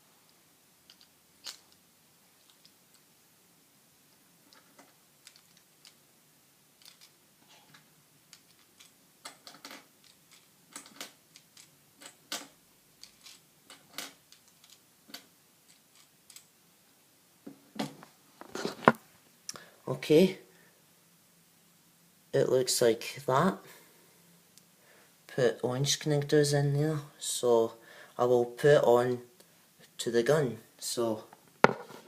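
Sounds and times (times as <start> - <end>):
plastic pieces clicking: 0.9 - 1.8, 4.5 - 6.0, 6.8 - 7.2, 8.3 - 16.5.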